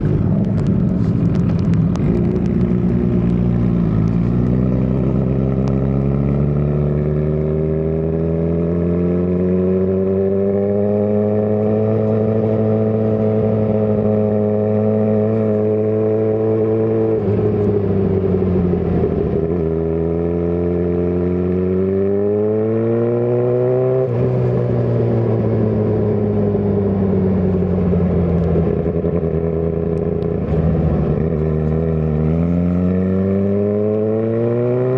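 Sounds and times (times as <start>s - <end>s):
motorcycle engine running: 0.0s - 22.8s.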